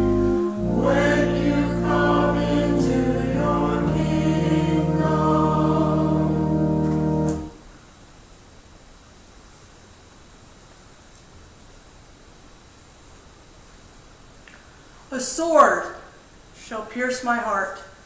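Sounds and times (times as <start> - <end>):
choir singing: 0.0 - 7.6
organ playing: 0.0 - 7.6.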